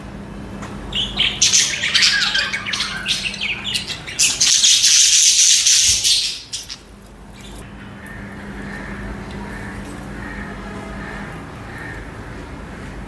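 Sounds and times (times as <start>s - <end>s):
budgerigars squawking: 0.9s - 6.8s
budgerigars chattering: 0.9s - 7.6s.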